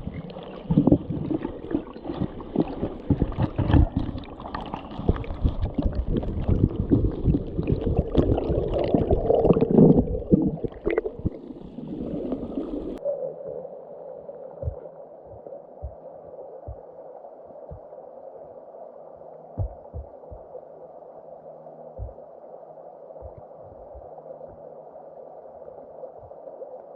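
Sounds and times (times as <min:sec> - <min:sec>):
river water gurgling and splashing: 0:00.0 - 0:13.0
muffled water rushing: 0:00.0 - 0:26.9
soft thumps: 0:19.6 - 0:20.5.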